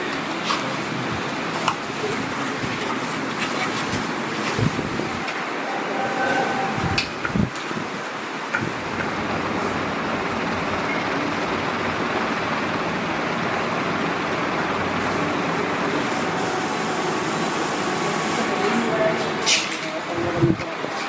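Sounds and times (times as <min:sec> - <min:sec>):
machinery whirring: 0:00.1 - 0:21.0.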